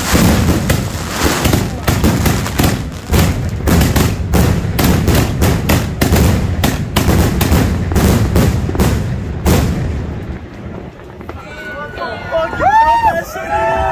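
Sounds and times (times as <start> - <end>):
firework shots: 0.0 - 12.0.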